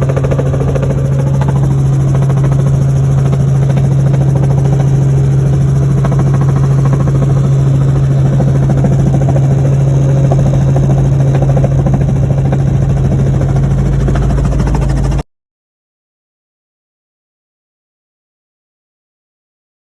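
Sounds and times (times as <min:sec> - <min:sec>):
helicopter engine and rotor drone: 0:00.0 - 0:15.3.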